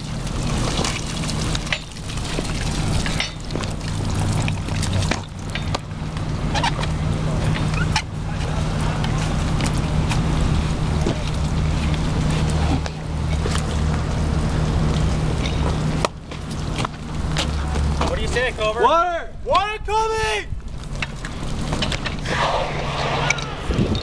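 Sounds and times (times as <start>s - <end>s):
fire engine pump running: 0.0s - 19.0s.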